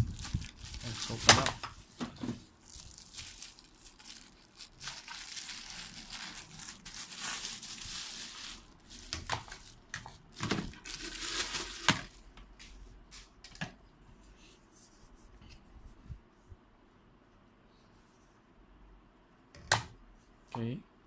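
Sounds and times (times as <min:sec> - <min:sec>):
packaging crinkling and rustling: 0:00.0 - 0:12.2.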